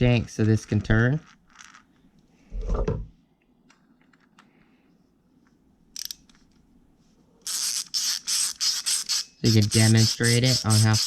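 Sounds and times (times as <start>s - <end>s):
screwdriver parts clicking: 6.0s - 6.5s.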